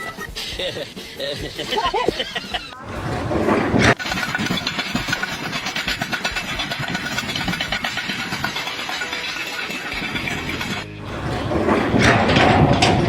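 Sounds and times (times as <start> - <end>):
engine-driven machine pulsing: 2.8 - 13.0.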